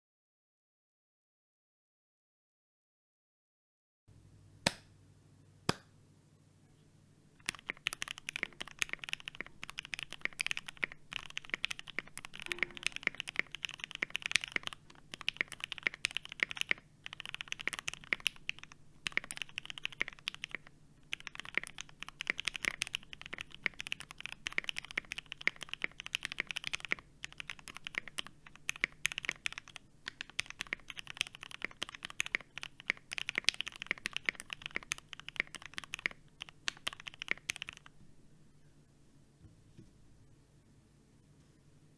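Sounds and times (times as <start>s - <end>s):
mechanical keyboard typing: 7.4s - 37.9s.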